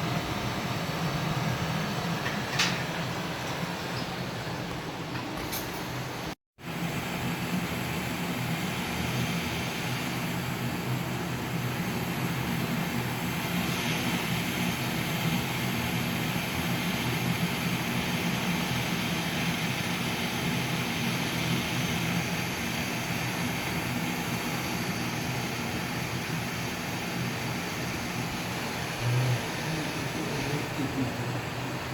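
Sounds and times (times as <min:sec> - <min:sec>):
motor-driven machine humming: 0:21.7 - 0:31.9.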